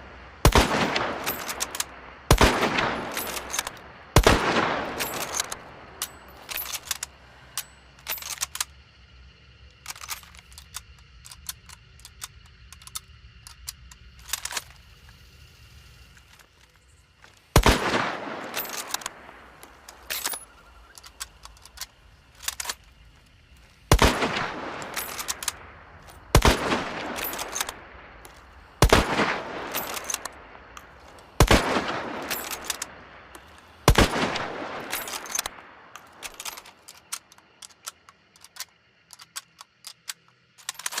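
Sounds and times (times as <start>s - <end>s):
rifle shots echoing: 0.4s - 6.9s, 17.5s - 20.5s, 23.9s - 36.5s
rifle bolt clicks: 0.5s - 8.8s, 17.6s - 23.0s, 23.6s - 29.1s, 29.7s - 41.0s.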